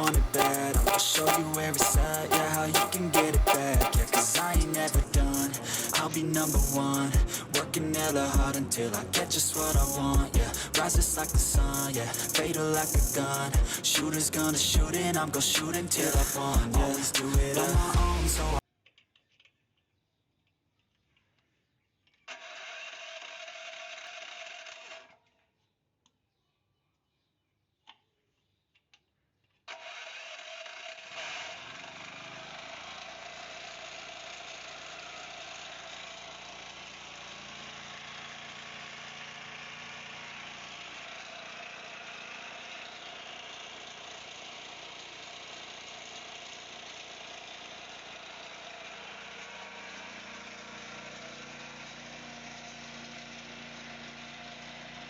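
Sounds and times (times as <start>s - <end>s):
portable generator engine running: 0.0s - 18.6s, 35.6s - 55.0s.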